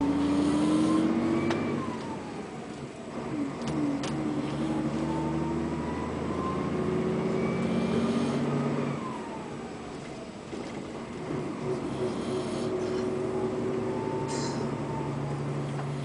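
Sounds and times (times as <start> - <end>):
man snoring loudly: 0.0 - 1.4, 4.2 - 9.0, 11.8 - 13.4.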